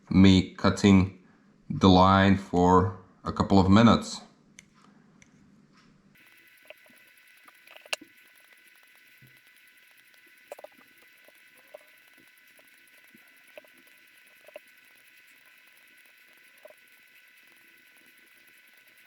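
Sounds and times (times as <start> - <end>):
steady hiss: 6.2 - 19.0.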